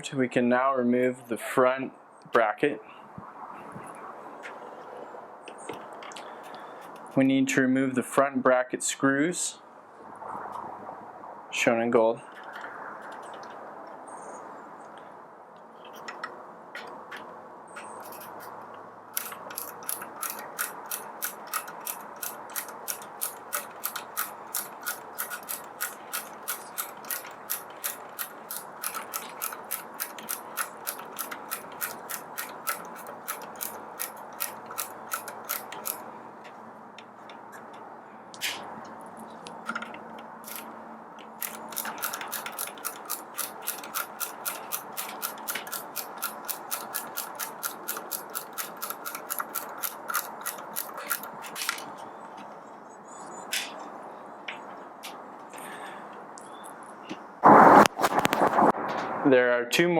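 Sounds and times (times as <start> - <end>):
ratcheting screwdriver clicking: 19.2 - 36.0, 40.4 - 40.7, 41.4 - 51.3.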